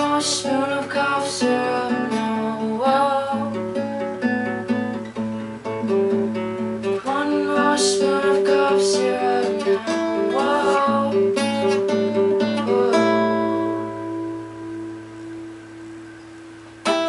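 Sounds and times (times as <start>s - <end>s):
person singing: 0.0s - 4.0s, 6.9s - 14.5s
acoustic guitar strumming: 0.0s - 17.0s.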